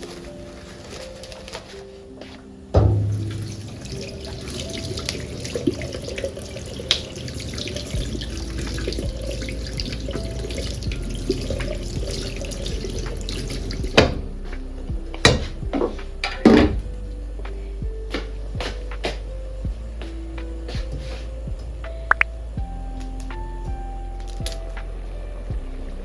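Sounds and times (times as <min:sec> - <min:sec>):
water running and splashing: 0:02.8 - 0:14.2.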